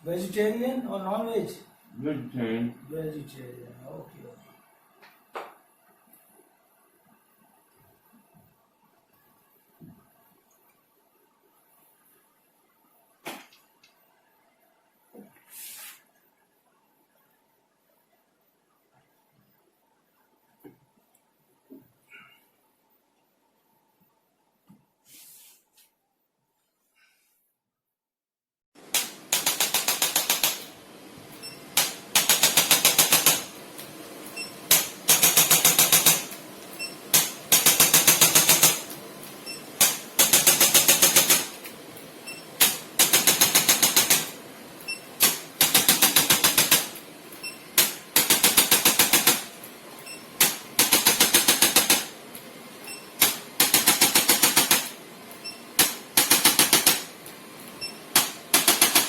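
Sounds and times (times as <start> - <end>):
electric percussion rapid tapping: 28.9 - 30.8, 31.4 - 41.8, 42.6 - 44.4, 45.2 - 47.1, 47.7 - 49.6, 50.4 - 52.2, 53.1 - 55.0, 55.7 - 57.2, 58.1 - 59.0.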